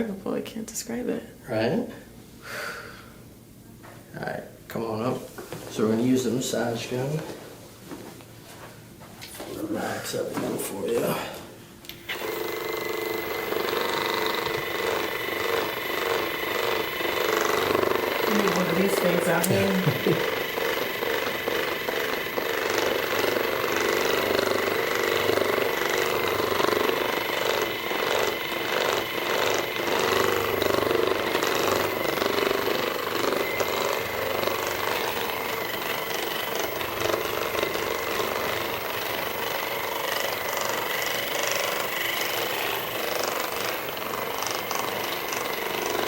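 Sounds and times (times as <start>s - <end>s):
massage gun hammering buzz: 11.9s - 46.0s.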